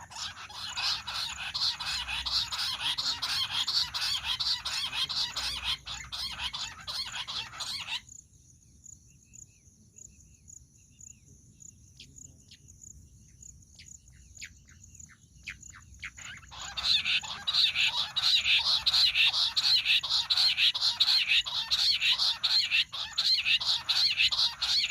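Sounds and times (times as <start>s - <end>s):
quail chattering: 0.0s - 8.1s, 13.8s - 24.9s.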